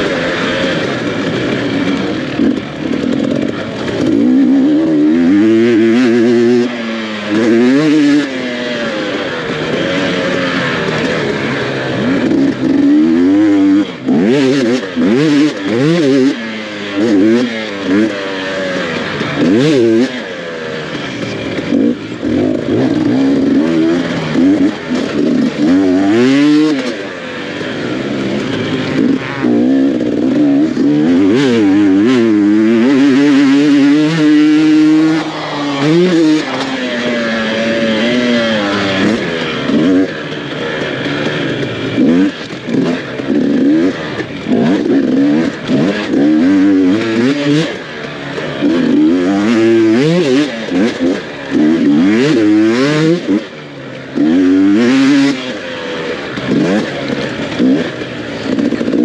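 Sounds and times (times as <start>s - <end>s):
dirt bike engine revving: 0.0s - 59.0s.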